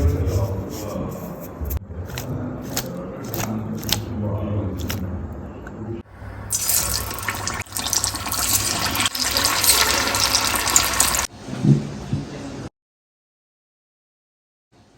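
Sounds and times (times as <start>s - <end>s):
food deep-frying in oil: 6.3s - 11.3s.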